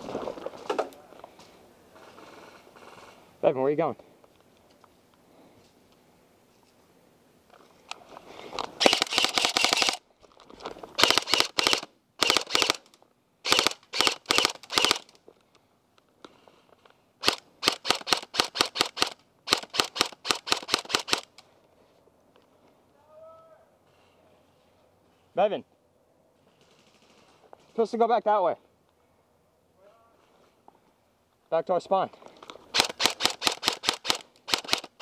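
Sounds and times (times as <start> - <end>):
airsoft guns firing rapid bursts: 8.8 - 10.0, 11.0 - 12.8, 13.5 - 15.0, 17.2 - 21.3, 32.7 - 35.0.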